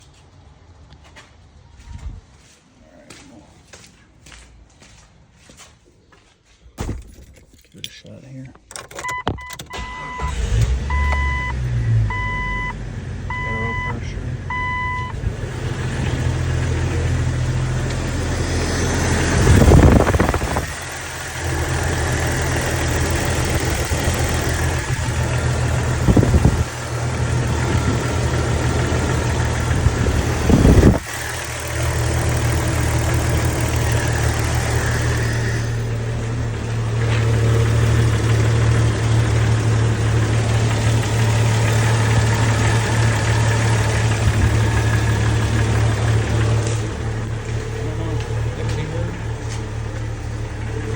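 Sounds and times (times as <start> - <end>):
car engine idling: 7.0 - 50.9.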